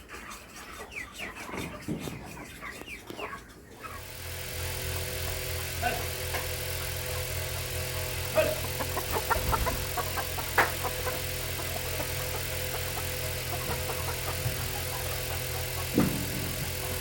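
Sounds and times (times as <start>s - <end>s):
low mechanical hum: 3.6s - 17.0s.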